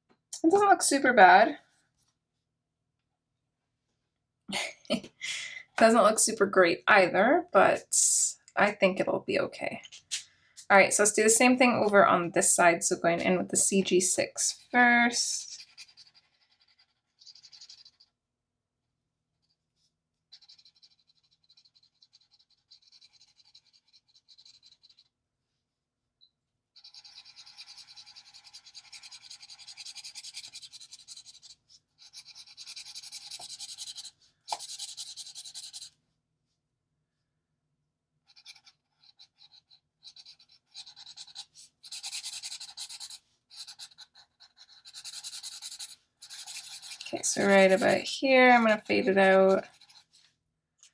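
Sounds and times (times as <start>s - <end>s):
marker rubbing on paper: 15.3s - 18.1s, 20.3s - 25.1s, 26.8s - 36.0s, 38.3s - 50.3s.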